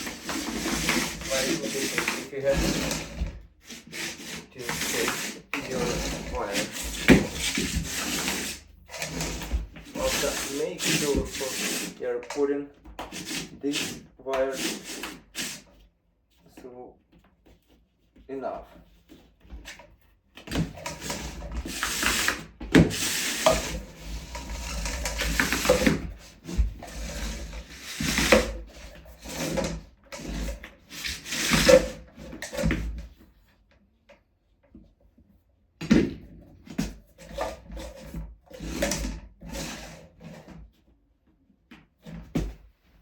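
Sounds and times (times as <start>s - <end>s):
hands rubbing and scraping: 0.0s - 12.4s.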